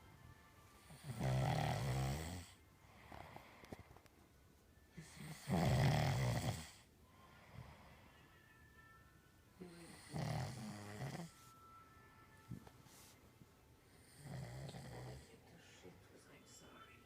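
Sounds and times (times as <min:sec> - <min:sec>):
quiet breathing: 0:00.6 - 0:08.6
loud snoring: 0:00.9 - 0:02.6, 0:05.0 - 0:06.8, 0:09.8 - 0:11.3, 0:14.0 - 0:15.3.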